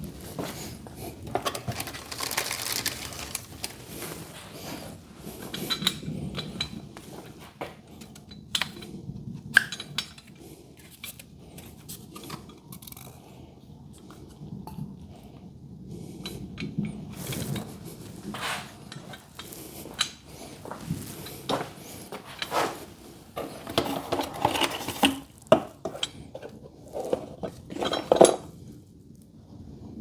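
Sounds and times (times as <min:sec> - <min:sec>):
metal tools clinking: 0:01.4 - 0:04.2, 0:23.4 - 0:28.5.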